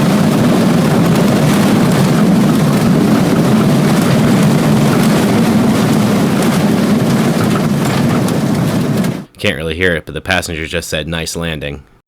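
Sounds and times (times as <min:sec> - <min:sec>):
airplane cabin engine drone: 0:00.0 - 0:09.3.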